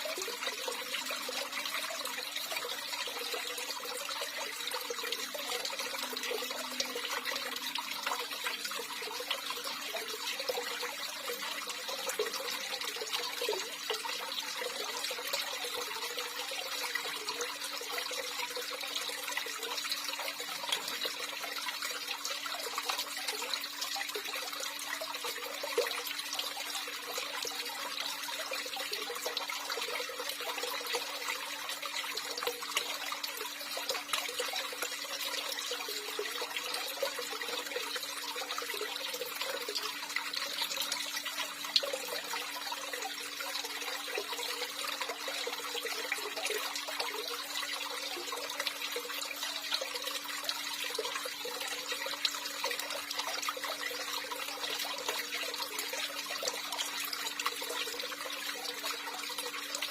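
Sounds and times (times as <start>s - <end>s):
water running and trickling: 0.0s - 59.9s.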